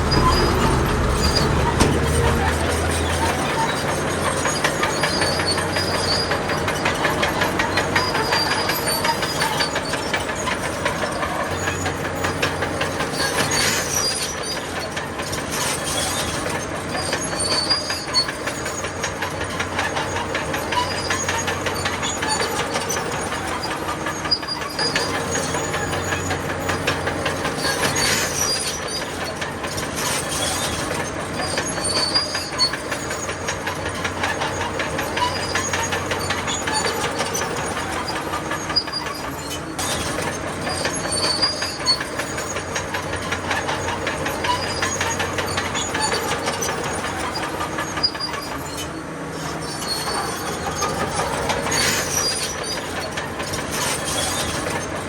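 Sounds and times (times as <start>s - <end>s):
high-pitched track squeals: 0.0s - 6.9s
bulldozer diesel engine: 0.0s - 55.0s
steel tracks clattering: 0.0s - 55.0s.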